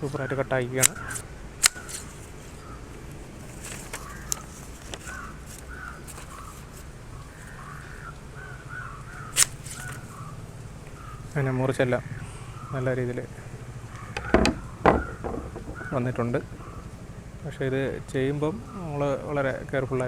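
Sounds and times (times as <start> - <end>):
birds calling: 0.0 - 20.0
grass shears snipping: 0.8 - 2.6, 3.3 - 7.7, 9.2 - 10.3.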